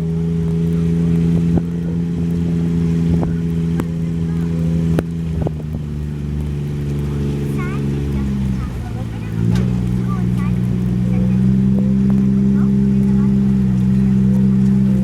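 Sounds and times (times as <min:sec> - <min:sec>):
ride train engine droning: 0:00.0 - 0:15.0
ride clunks and knocks: 0:04.9 - 0:15.0.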